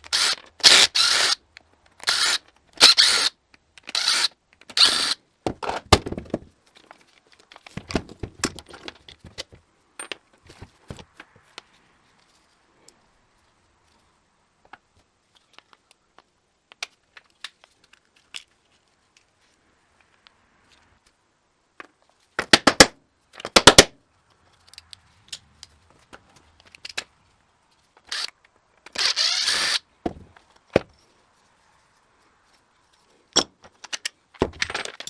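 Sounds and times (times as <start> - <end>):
metal parts clicking and knocking: 2.0 - 5.2, 33.3 - 35.0.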